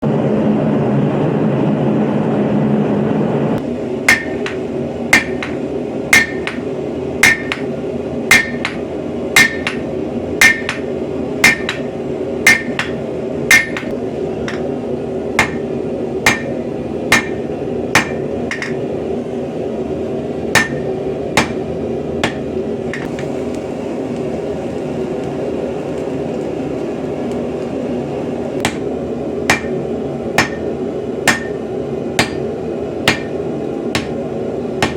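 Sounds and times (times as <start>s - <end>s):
hammer blows on hot steel: 3.9s - 14.8s, 15.4s - 18.9s, 20.5s - 23.3s, 28.6s - 34.2s.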